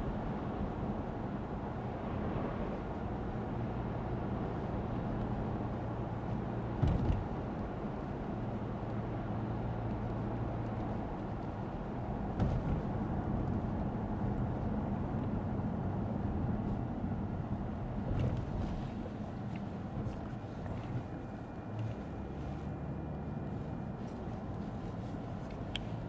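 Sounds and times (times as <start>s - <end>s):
car driving on wet road: 0.0s - 26.0s
thump: 6.8s - 7.2s, 12.4s - 12.8s.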